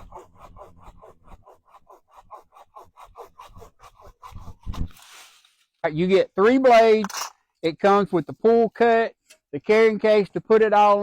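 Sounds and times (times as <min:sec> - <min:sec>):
hand saw rasping through branch: 0:00.0 - 0:05.6.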